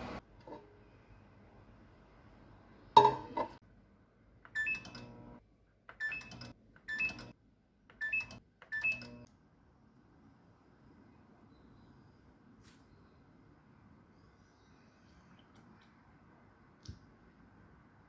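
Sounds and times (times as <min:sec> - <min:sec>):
short beeps with clicks: 0:08.0 - 0:09.2.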